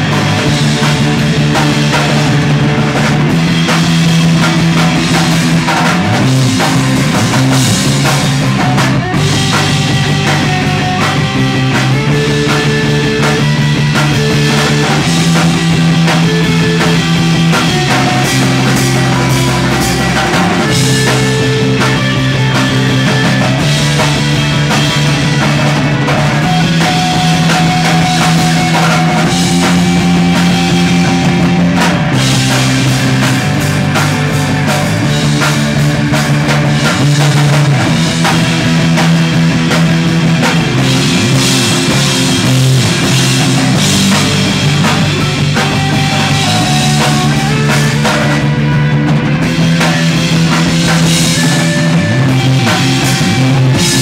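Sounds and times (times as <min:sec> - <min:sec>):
rock band playing: 0:00.0 - 0:54.0.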